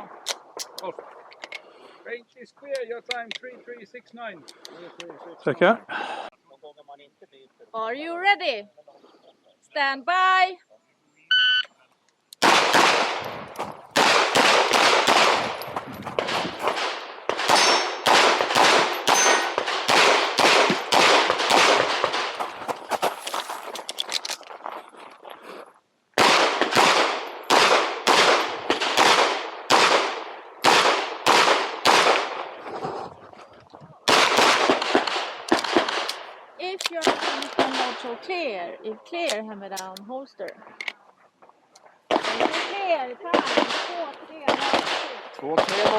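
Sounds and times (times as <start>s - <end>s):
pistol shots: 12.4s - 22.4s, 26.2s - 32.6s, 34.1s - 36.4s, 42.1s - 45.9s.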